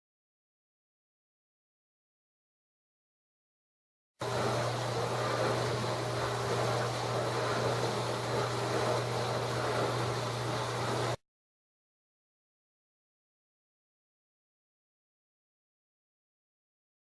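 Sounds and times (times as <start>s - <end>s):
dishwasher running: 4.2s - 11.2s.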